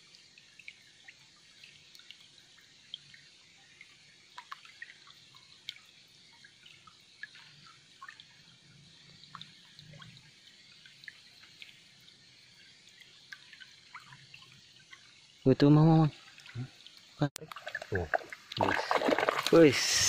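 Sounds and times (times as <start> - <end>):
water drops dripping: 0.0 - 8.4, 9.2 - 11.9, 12.6 - 19.7
low steady hiss: 0.0 - 20.0.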